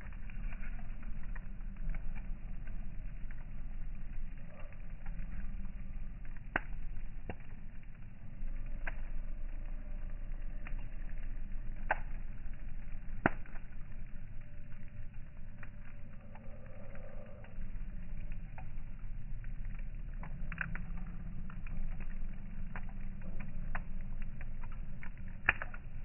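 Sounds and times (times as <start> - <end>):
sharp fire pops: 0.0 - 16.8, 17.4 - 26.0
campfire crackling: 0.0 - 26.0.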